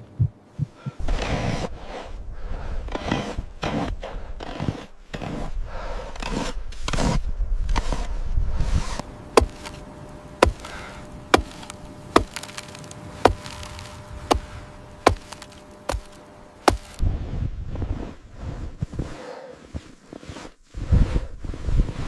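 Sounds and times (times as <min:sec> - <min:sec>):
hand tool chopping strikes: 0:09.4 - 0:17.0.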